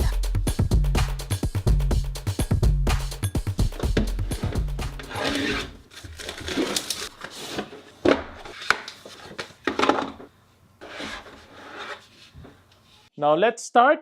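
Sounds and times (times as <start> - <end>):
objects rustling and scraping: 3.8 - 13.1.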